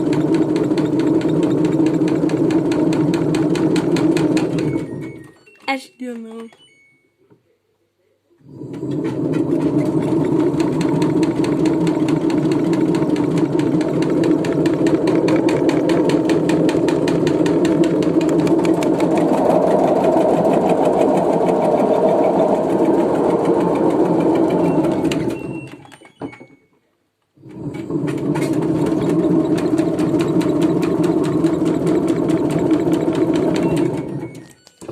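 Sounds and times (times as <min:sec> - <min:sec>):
washing machine rattling: 0:00.0 - 0:05.4, 0:08.4 - 0:26.6, 0:27.4 - 0:34.9.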